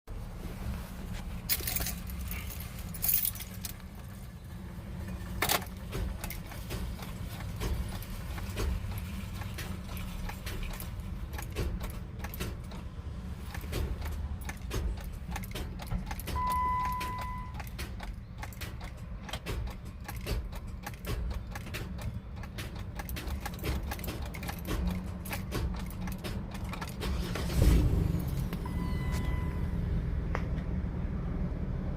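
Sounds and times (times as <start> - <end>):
keys jangling: 1.4 - 4.2, 13.5 - 27.6
ignition clicking: 13.5 - 29.4
short beep: 16.4 - 17.6, 28.6 - 29.8.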